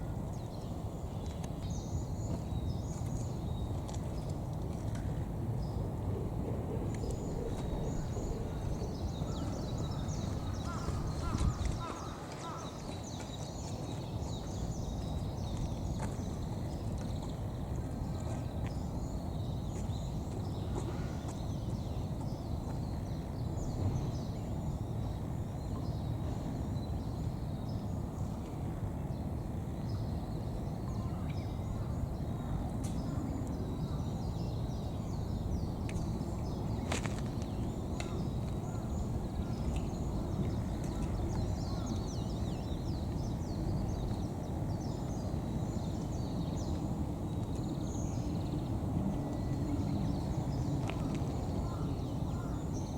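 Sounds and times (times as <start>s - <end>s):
low outdoor rumble: 3.3s - 12.2s.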